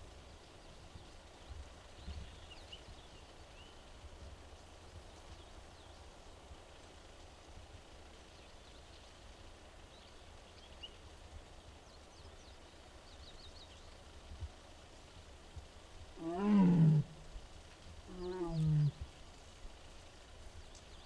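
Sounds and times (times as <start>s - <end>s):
low wind rumble: 16.1s - 19.2s
small birds chirping: 18.0s - 19.0s.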